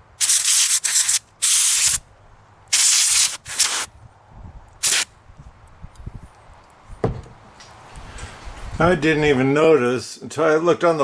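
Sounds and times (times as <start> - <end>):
compressed air bursts hissing: 0.0 - 2.0, 2.7 - 3.9, 4.8 - 5.1.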